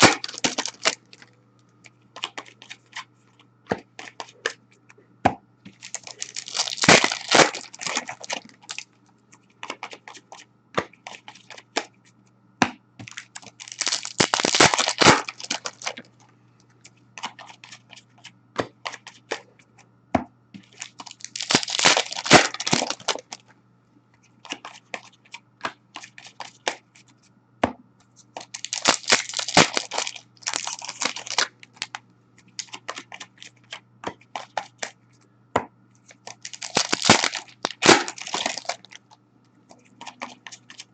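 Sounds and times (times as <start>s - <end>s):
wrappers tearing and crumpling: 0.0s - 1.3s, 5.8s - 8.9s, 13.1s - 16.1s, 20.7s - 23.4s, 28.4s - 32.0s, 32.6s - 33.5s, 36.2s - 39.1s.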